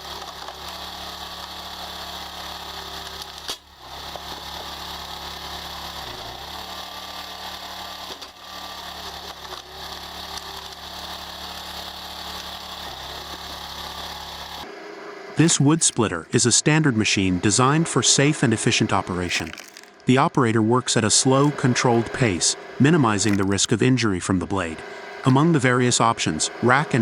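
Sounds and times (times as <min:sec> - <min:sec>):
wood splitter motor humming: 0:00.0 - 0:27.0.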